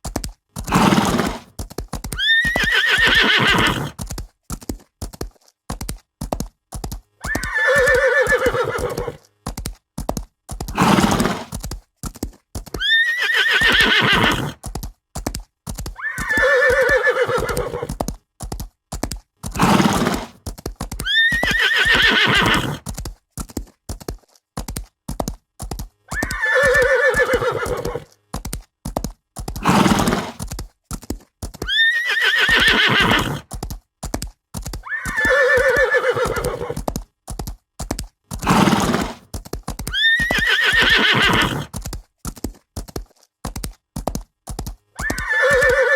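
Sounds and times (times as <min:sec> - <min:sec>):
hoofbeats: 0:00.0 - 0:45.9
horses whinnying: 0:00.7 - 0:01.5, 0:02.1 - 0:04.0, 0:07.2 - 0:09.2, 0:10.8 - 0:11.5, 0:12.8 - 0:14.6, 0:16.0 - 0:18.0, 0:19.5 - 0:20.4, 0:21.0 - 0:22.9, 0:26.1 - 0:28.1, 0:29.6 - 0:30.4, 0:31.6 - 0:33.5, 0:34.8 - 0:36.8, 0:38.4 - 0:39.2, 0:39.9 - 0:41.8, 0:45.0 - 0:45.9.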